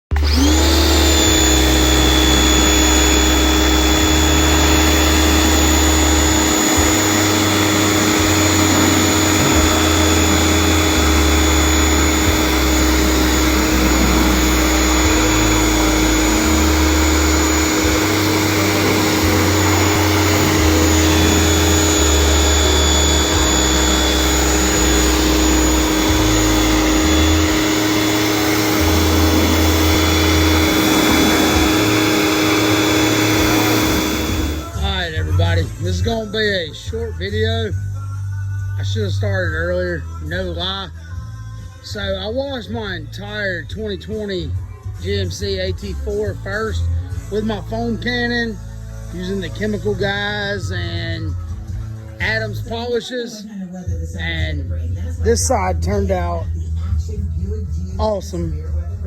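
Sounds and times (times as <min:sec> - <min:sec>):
electric motor whining: 0:00.0 - 0:35.3.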